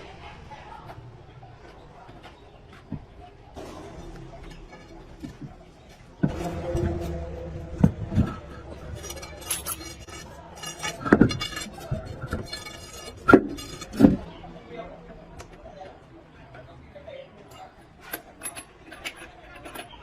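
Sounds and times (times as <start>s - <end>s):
metal tools clinking: 3.6s - 14.2s, 17.5s - 20.0s
short metallic rings: 8.2s - 14.0s.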